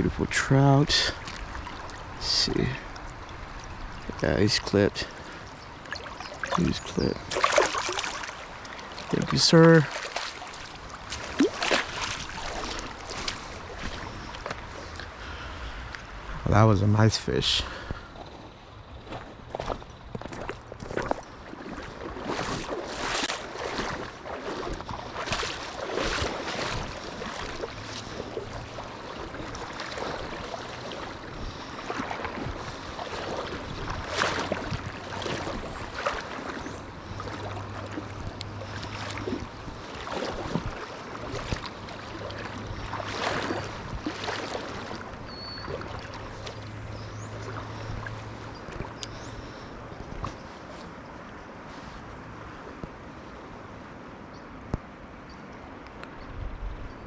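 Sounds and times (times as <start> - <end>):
river water rushing: 0.0 - 18.8, 20.5 - 55.8
wind on microphone: 31.0 - 37.2.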